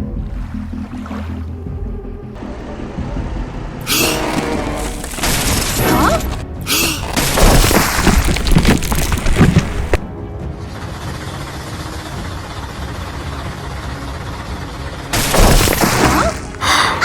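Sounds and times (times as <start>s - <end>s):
background music: 0.0s - 17.0s
crashing rumbling sound effects: 7.0s - 10.1s.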